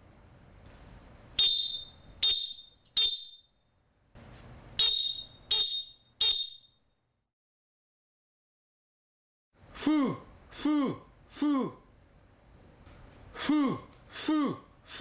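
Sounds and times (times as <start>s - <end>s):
referee whistle blasts: 1.4s - 3.5s, 4.8s - 6.8s.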